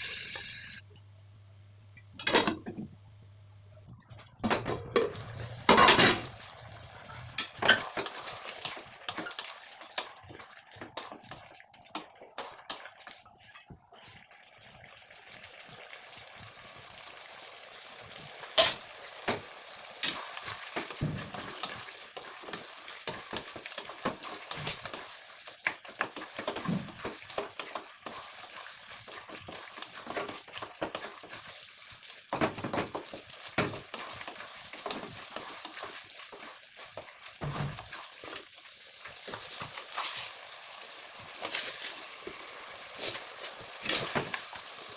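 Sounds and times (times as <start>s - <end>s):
curry sizzling in a pan: 5.0s - 44.9s
spoon scraping a pan: 7.3s - 14.2s, 18.5s - 18.8s, 20.0s - 25.2s, 43.0s - 44.4s.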